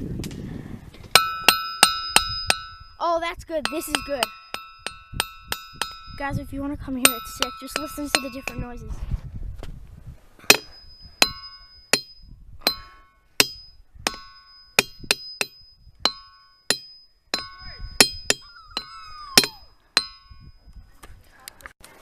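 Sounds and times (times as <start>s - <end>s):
hammer striking ringing rocks: 1.1s - 3.0s, 3.6s - 8.8s, 10.4s - 20.6s.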